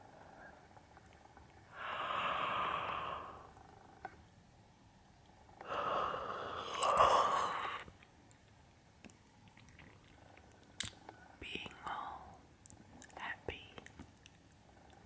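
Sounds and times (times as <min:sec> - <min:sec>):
breathy exhale: 0:05.6 - 0:07.9.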